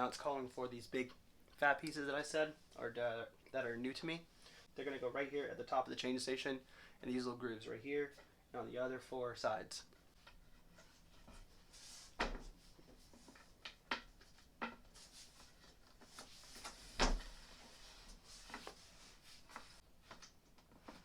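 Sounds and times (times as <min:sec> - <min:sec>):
furniture parts knocking and clicking: 0:12.2 - 0:15.0.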